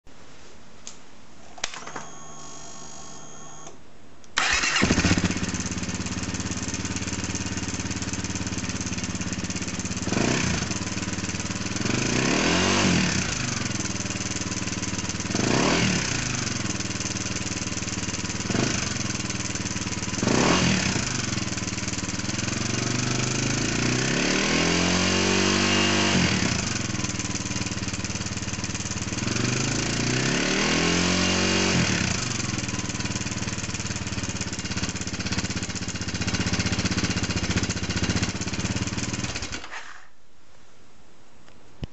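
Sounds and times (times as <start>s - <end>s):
starter whine: 4.4s - 11.8s, 31.9s - 40.1s
motorcycle engine idling and revving: 4.4s - 40.0s.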